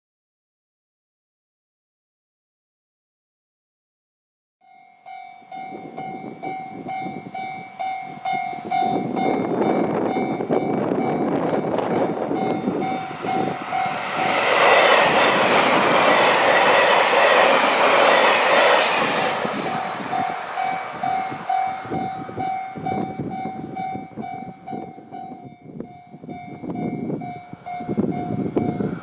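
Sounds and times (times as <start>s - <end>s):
level-crossing alarm ringing: 4.7s - 17.5s, 19.6s - 29.0s
fast train rushing past: 5.1s - 29.0s
wind buffeting microphone: 5.4s - 29.0s.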